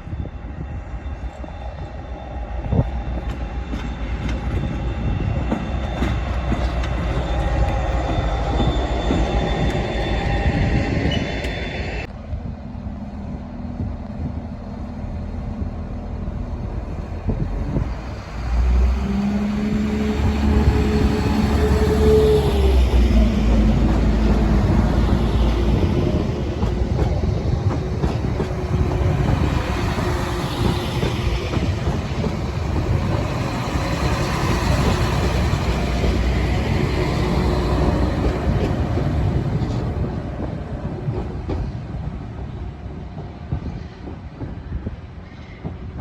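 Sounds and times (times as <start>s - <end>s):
train wheels rumbling on rails: 0.0s - 46.0s.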